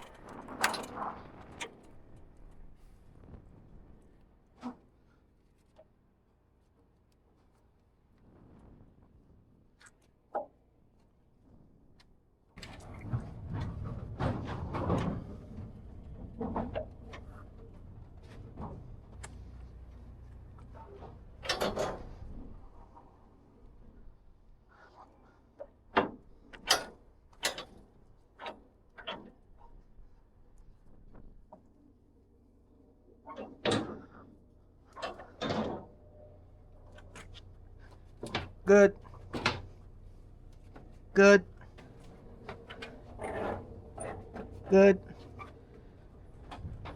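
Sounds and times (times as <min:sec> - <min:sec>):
gear clattering in trailer: 0:00.0 - 0:02.7, 0:12.6 - 0:23.2.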